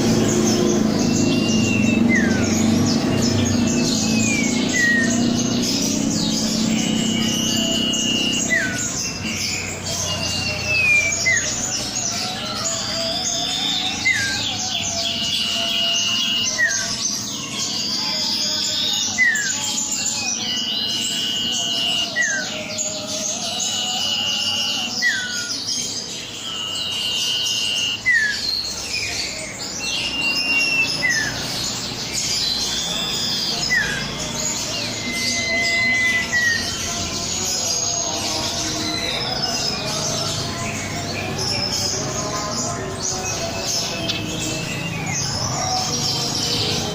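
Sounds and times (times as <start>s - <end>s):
higher bird chirps and trills: 0.0s - 46.9s
songbird singing: 0.0s - 46.9s.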